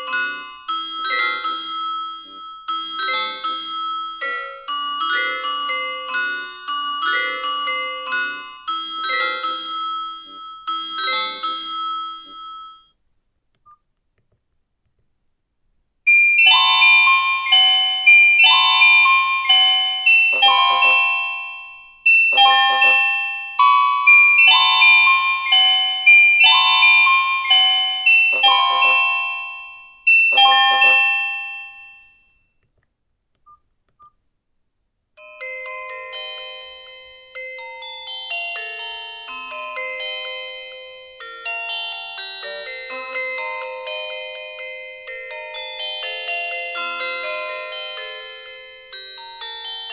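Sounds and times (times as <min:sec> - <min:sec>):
phone ringtone melody: 0:00.0 - 0:12.9, 0:16.1 - 0:32.3, 0:35.2 - 0:49.9.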